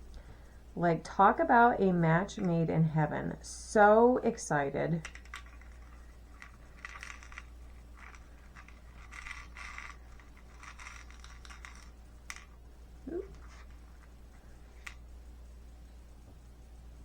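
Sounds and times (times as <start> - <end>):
steady low hum: 0.0 - 17.0
light clicks of beads: 5.0 - 15.2.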